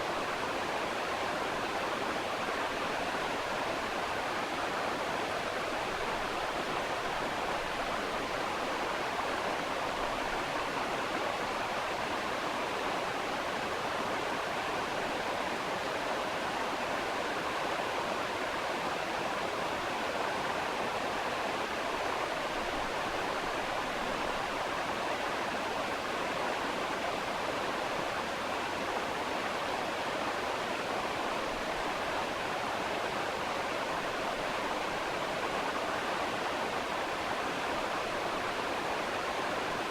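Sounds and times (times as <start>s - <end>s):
steady rushing water noise: 0.0s - 39.9s.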